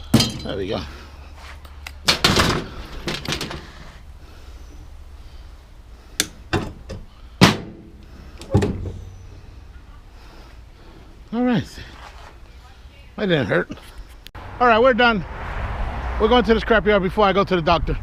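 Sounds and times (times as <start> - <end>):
scrap metal knocks and clunks: 0.0 - 0.8, 2.0 - 3.9, 6.2 - 9.2.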